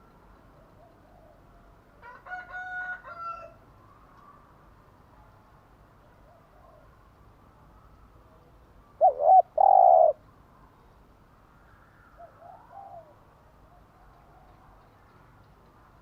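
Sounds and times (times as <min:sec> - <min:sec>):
dove cooing: 0:09.0 - 0:10.2, 0:12.2 - 0:13.2.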